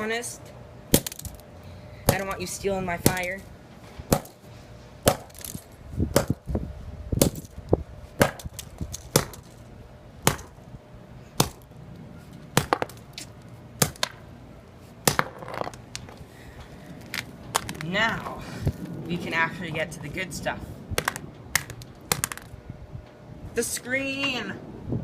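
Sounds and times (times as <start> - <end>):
sharp blows smashing a phone: 11.4 - 11.6, 13.8 - 14.2.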